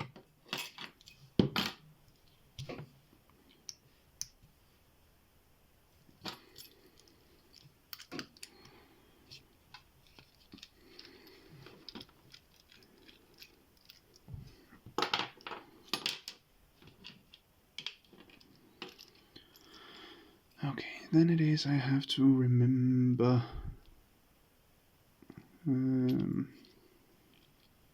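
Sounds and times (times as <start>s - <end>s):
metallic clicks of lock parts: 6.4s - 8.6s.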